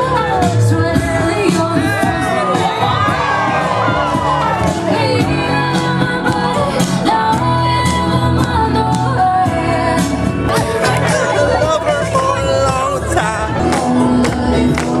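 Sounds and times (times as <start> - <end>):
pop song with singer and band: 0.0 - 15.0.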